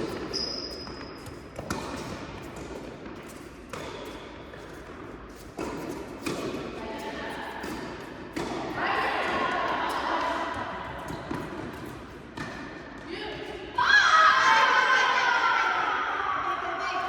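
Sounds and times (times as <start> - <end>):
tennis ball hit by rackets: 7.6 - 10.4.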